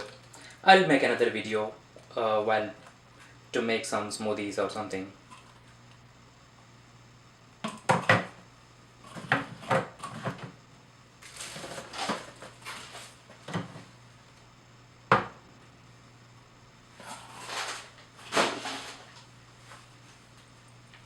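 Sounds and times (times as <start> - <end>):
scraping or rustling: 11.2 - 13.9, 17.0 - 19.3
object set down with knock: 15.1 - 15.4.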